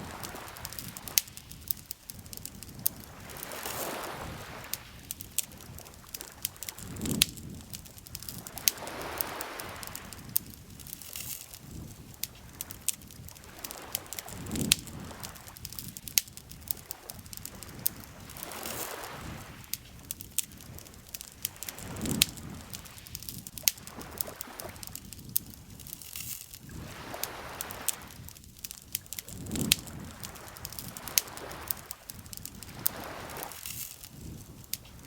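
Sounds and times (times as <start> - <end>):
campfire crackling and popping: 0.0 - 35.0
lake water lapping: 3.0 - 10.2, 16.8 - 19.6, 26.8 - 28.2.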